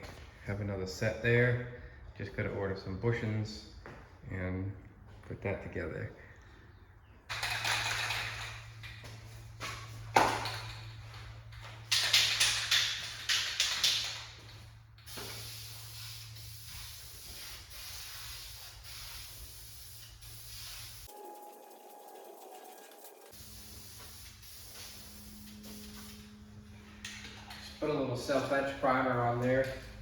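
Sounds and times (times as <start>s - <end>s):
spray paint hissing: 15.0s - 26.4s
low steady hum: 21.1s - 30.0s.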